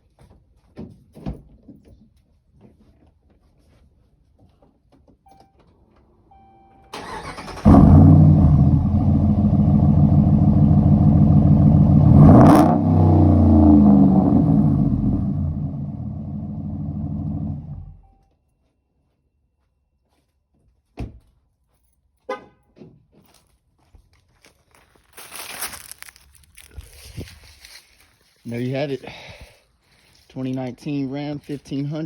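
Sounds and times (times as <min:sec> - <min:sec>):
starter cranking: 0:07.0 - 0:07.8
loud engine running and revving: 0:07.6 - 0:17.9.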